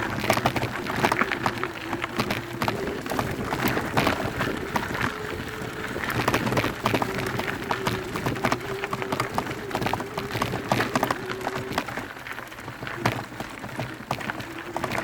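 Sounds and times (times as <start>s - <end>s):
bike rattles and knocks: 0.0s - 15.0s
bike tyre noise on dirt: 0.0s - 15.0s.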